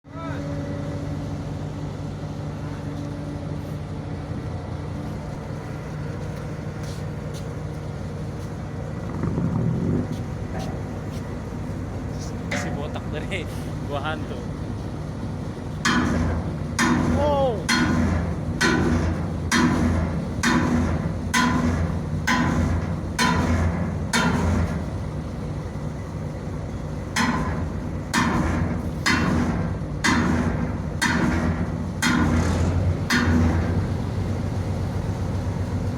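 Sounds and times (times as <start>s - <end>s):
vehicle engine idling: 0.1s - 35.9s
hammer blows on sheet metal: 15.9s - 24.8s.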